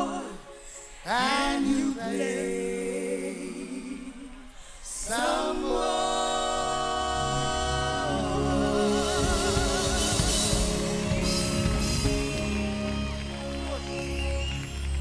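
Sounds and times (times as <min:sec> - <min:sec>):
band playing: 0:08.1 - 0:15.0.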